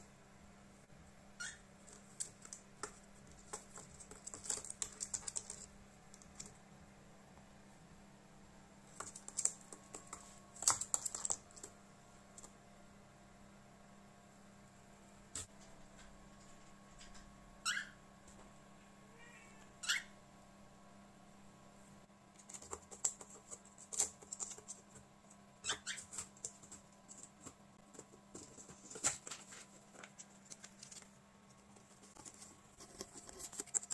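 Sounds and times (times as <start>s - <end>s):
cockatiel harsh calls: 1.4s - 1.6s, 17.6s - 18.0s, 19.8s - 20.1s, 25.6s - 26.1s.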